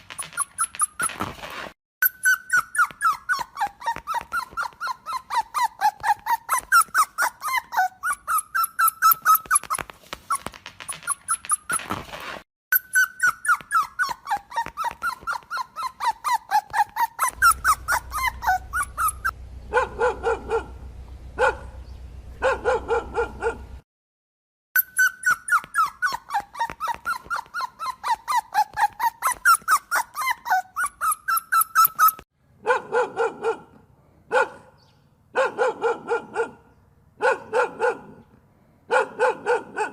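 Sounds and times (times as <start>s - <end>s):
dogs yelping: 0.0s - 12.0s, 12.8s - 21.8s, 22.4s - 23.8s, 24.8s - 33.7s, 34.3s - 34.8s, 35.4s - 38.2s, 38.9s - 39.9s
deep dog barks: 19.7s - 20.8s, 21.4s - 23.8s, 32.6s - 38.3s, 38.9s - 39.9s.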